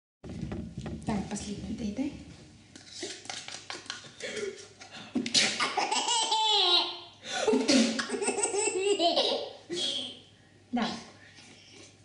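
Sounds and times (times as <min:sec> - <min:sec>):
baby laughing: 0:05.6 - 0:07.0, 0:07.6 - 0:10.2.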